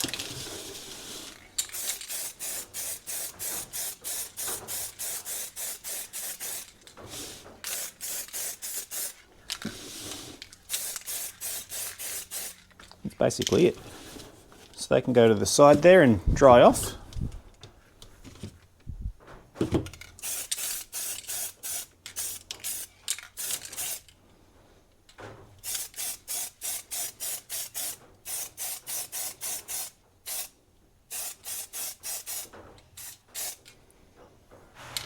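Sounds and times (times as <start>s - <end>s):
spray paint bursts: 0.2s - 9.2s, 9.8s - 12.6s, 20.2s - 24.1s, 25.6s - 33.7s.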